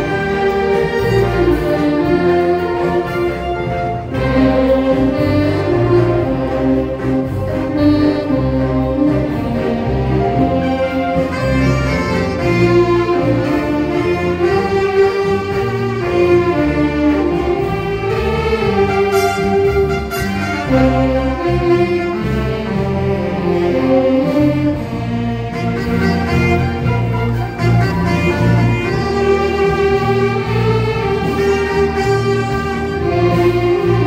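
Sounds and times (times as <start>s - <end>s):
sustained melody over bass: 0.0s - 34.0s.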